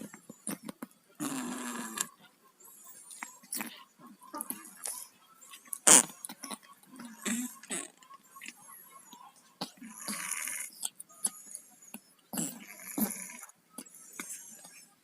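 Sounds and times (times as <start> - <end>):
cat snoring and snuffling: 1.2 - 2.1, 10.0 - 10.7, 12.3 - 13.4.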